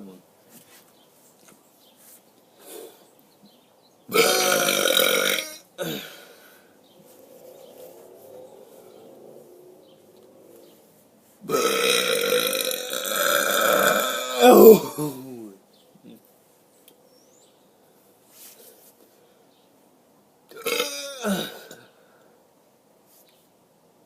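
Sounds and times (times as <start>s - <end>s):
man burping loudly: 4.1s - 6.4s, 11.5s - 15.5s, 20.5s - 21.8s.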